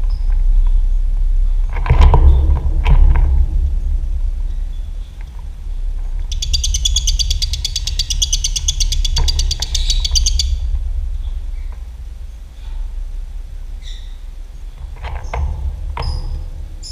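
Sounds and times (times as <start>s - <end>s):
steady low hum: 0.0s - 16.9s
lovebird chattering trill: 6.3s - 10.6s.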